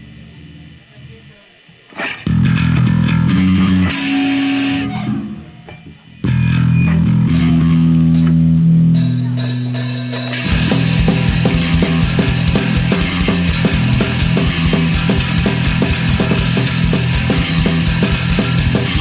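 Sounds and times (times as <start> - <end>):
electric guitar and bass chords: 0.0 - 1.0, 2.0 - 19.0
drum and cymbal hits: 9.0 - 19.0.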